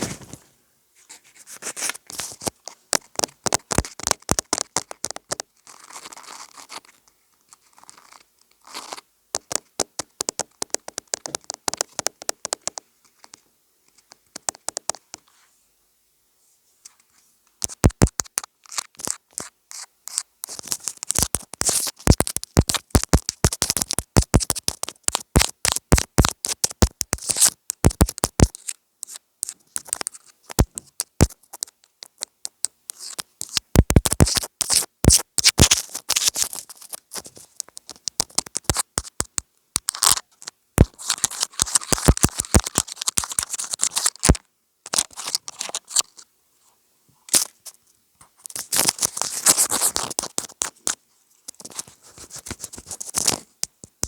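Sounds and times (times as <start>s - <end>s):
scratching on gadget: 1.1s - 15.4s, 17.6s - 46.2s, 48.4s - 54.0s
rapid tapping on gadget: 2.9s - 5.5s, 9.3s - 13.4s, 14.2s - 15.2s, 17.6s - 36.4s, 37.2s - 40.2s, 40.8s - 44.4s.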